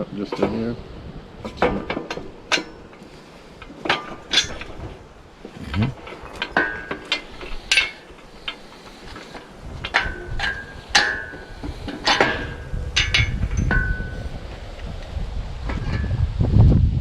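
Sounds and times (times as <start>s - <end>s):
metal tools clinking and knocking: 1.4s - 14.4s.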